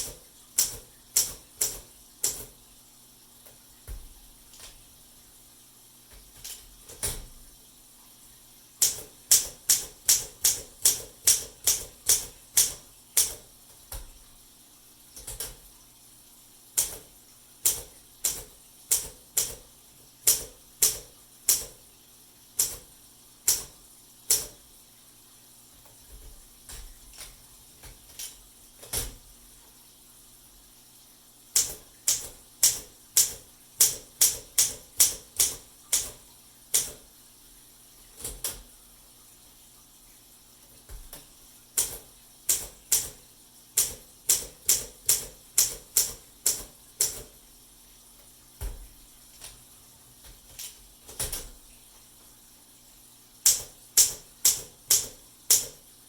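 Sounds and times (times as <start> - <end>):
manual typewriter keystrokes: 0.0 - 2.6, 6.2 - 7.4, 8.8 - 14.1, 15.2 - 15.6, 16.8 - 21.8, 22.6 - 24.6, 26.0 - 29.2, 31.5 - 37.1, 40.9 - 43.2, 43.8 - 47.4, 50.2 - 51.6, 53.4 - 55.8.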